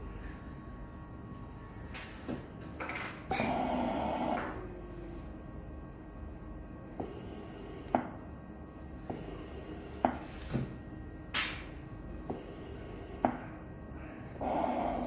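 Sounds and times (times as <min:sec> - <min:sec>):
ventilator valves clicking: 0:10.0 - 0:12.5.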